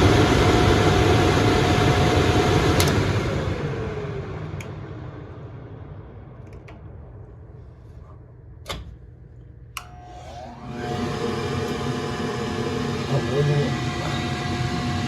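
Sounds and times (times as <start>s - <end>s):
machine motor winding down: 9.8s - 15.0s.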